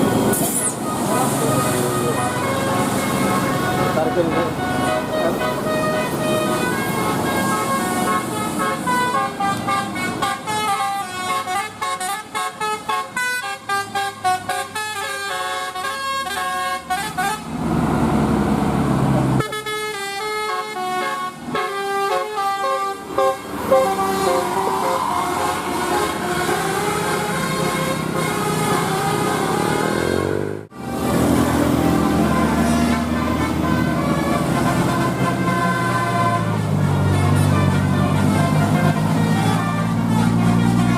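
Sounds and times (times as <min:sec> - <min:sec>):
bus multi-tone horn melody: 0:00.0 - 0:17.6, 0:19.3 - 0:40.9.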